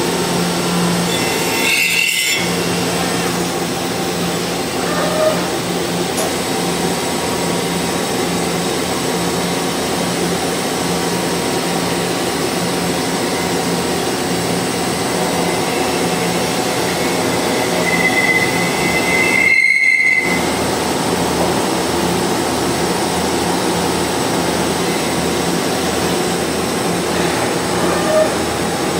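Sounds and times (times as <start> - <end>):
machinery humming: 0.0 - 28.9
high-pitched squeal: 15.0 - 20.6.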